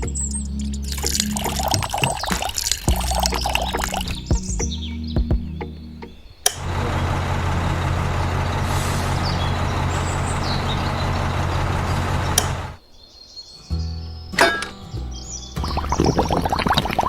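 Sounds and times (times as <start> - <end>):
switch click: 14.4 - 14.8.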